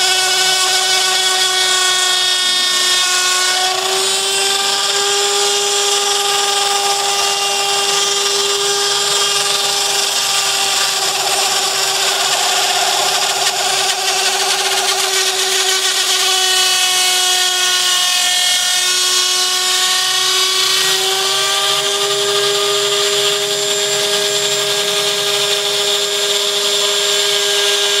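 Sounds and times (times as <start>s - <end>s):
spindle motor whining: 5.0s - 19.5s.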